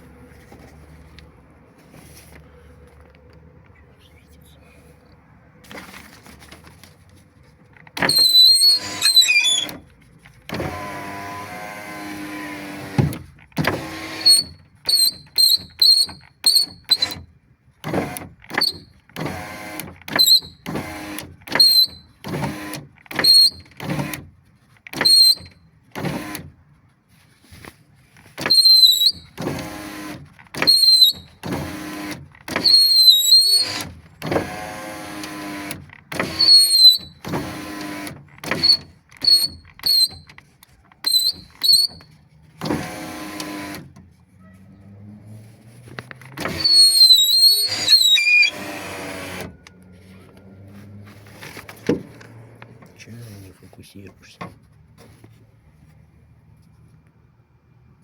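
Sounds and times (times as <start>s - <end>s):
high-pitched whistle from window lift: 8.1s - 9.8s, 14.3s - 17.1s, 28.5s - 29.3s, 30.7s - 31.2s, 32.7s - 33.8s, 41.1s - 42.0s, 46.6s - 48.8s
power window motor hum: 10.5s - 15.0s, 17.8s - 24.2s, 28.4s - 40.0s, 42.6s - 44.0s, 46.3s - 53.0s.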